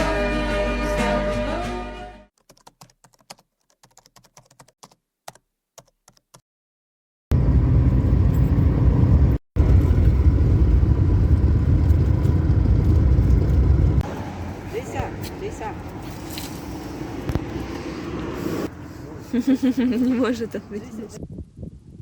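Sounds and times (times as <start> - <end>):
car driving rumble: 7.3 - 21.2.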